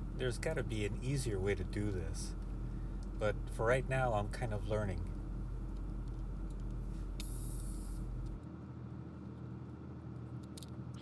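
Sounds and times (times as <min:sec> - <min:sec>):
low electrical hum: 0:00.0 - 0:11.0
brief hiss: 0:07.2 - 0:08.1.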